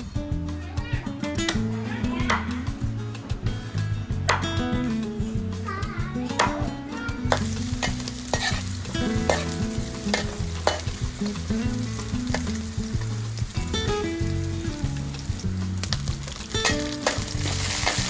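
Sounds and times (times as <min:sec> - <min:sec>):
utensil knocking against pan: 0:07.2 - 0:11.2
food sizzling in a pan: 0:07.2 - 0:18.0.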